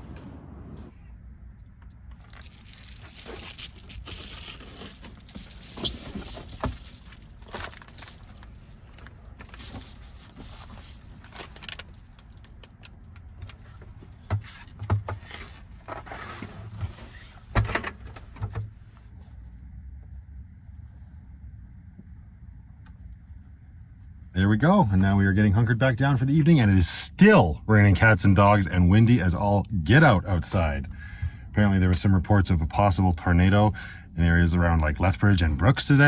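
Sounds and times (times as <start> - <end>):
person moving about clattering: 1.9 - 19.2.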